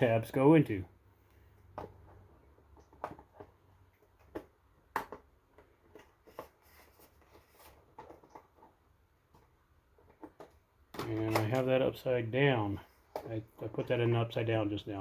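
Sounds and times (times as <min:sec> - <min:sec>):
plastic rubbing and scraping: 0:01.7 - 0:11.8.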